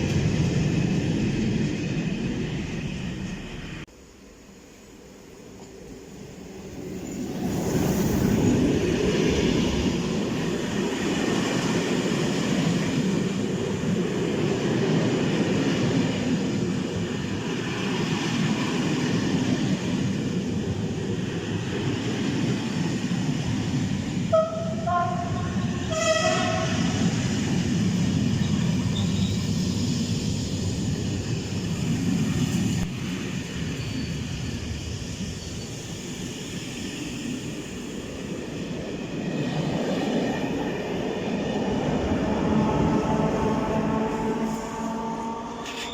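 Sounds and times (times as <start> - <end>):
diesel locomotives rumbling: 5.9 - 45.9
locomotive horn notes: 24.3 - 26.9, 42.3 - 45.9.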